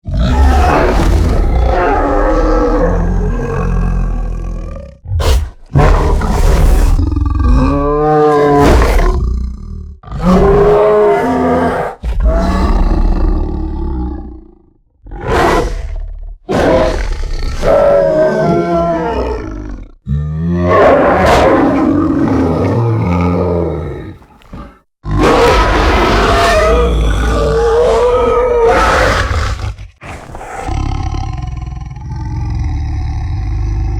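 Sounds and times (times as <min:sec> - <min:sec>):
deep beast roars and growls: 0:00.0 - 0:33.9.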